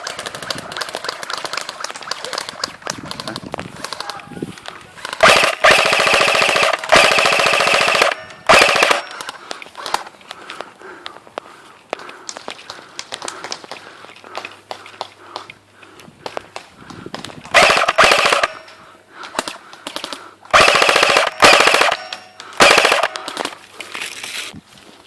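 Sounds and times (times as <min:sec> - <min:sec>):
airsoft guns firing bursts: 0:00.0 - 0:04.2, 0:05.0 - 0:09.4, 0:17.5 - 0:23.6
single airsoft shots: 0:05.2 - 0:09.1, 0:17.5 - 0:18.6, 0:20.5 - 0:23.4.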